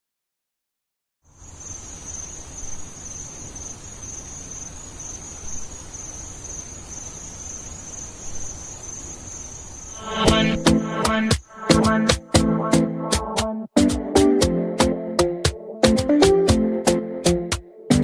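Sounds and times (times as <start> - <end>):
crickets chirring: 1.3 - 11.6
music with percussive hits and synth: 10.2 - 18.0.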